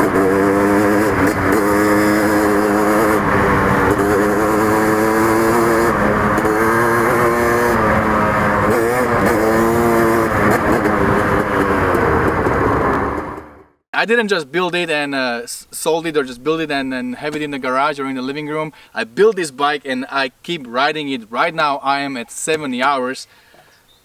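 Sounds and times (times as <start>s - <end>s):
two-stroke dirt bike engine revving: 0.0s - 13.5s.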